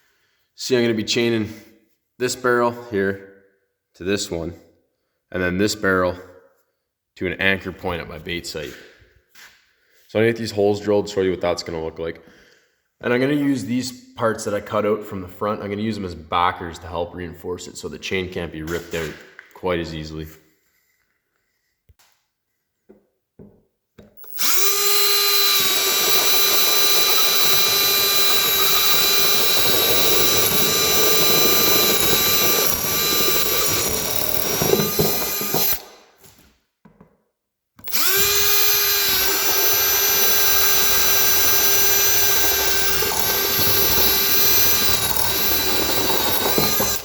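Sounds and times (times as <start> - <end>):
power drill whining: 24.2 - 36.0, 37.8 - 47.0.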